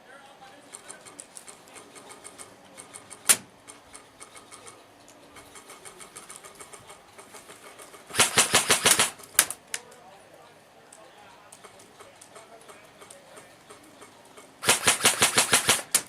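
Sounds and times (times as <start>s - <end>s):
airsoft guns firing: 3.2s - 3.5s, 8.0s - 9.6s, 14.6s - 16.0s
sharp crack: 3.2s - 3.5s, 8.1s - 10.0s, 14.6s - 16.0s.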